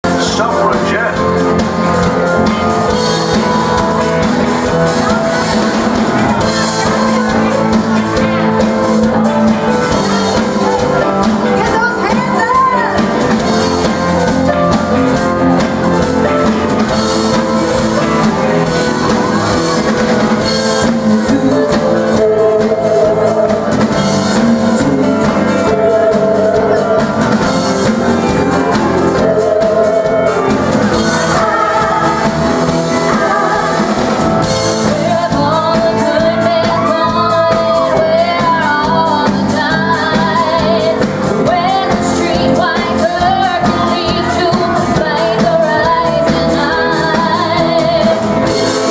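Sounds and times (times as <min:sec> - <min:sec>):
pop-rock backing track: 0:00.0 - 0:48.9
voices singing: 0:13.8 - 0:48.9.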